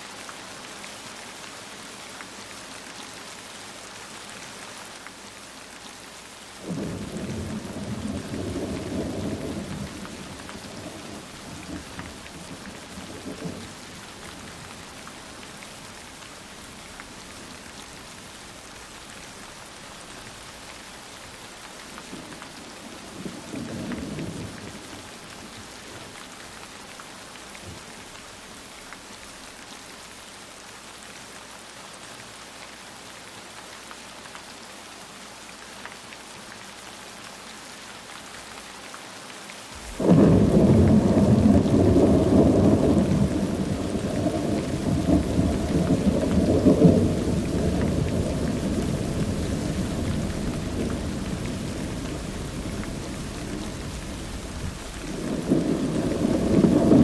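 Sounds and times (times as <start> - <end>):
heavy rain: 0.0 - 57.0
thunder rumbling: 39.8 - 57.0.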